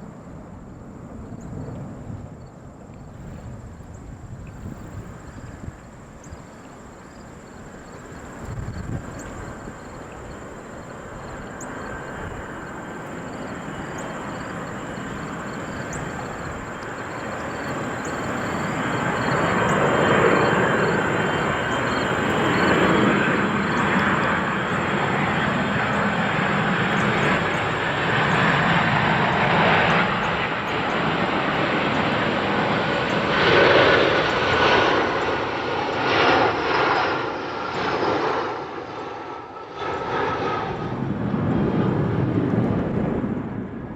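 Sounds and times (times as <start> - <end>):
jet airliner engine roar: 0.0 - 43.9
high engine whine: 8.1 - 35.2.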